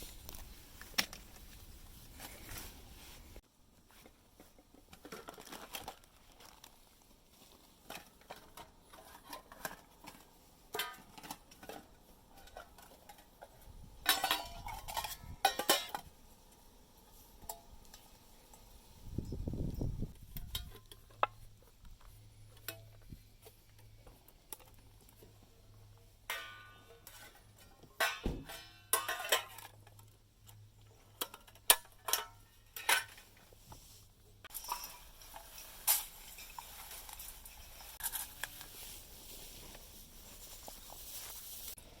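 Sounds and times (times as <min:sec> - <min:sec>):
metal cookware clinking: 0:14.0 - 0:16.1, 0:28.0 - 0:29.8, 0:34.5 - 0:38.4.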